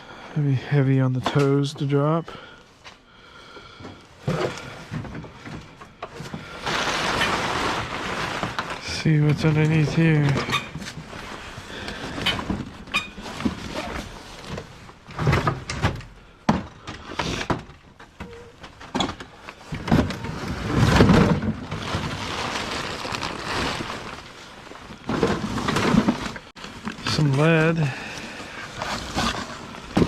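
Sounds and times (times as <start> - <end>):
scraping and rustling: 6.2 - 15.6, 19.4 - 30.0.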